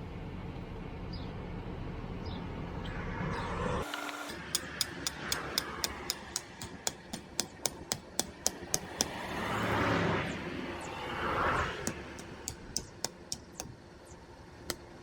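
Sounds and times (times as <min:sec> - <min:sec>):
fast sharp ticks: 0:04.5 - 0:09.2, 0:11.8 - 0:13.8
broad swell of noise: 0:09.2 - 0:12.6.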